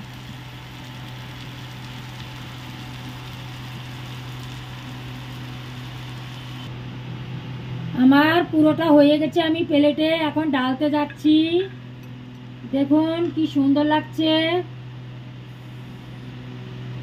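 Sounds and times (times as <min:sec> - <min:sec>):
vegetables sizzling in a frying pan: 0:00.0 - 0:06.7
steady low hum: 0:00.0 - 0:17.0.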